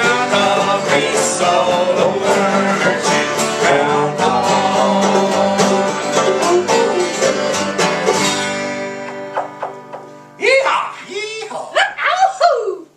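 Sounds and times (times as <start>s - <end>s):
banjo: 0.0s - 10.3s
strummed guitar: 0.0s - 10.4s.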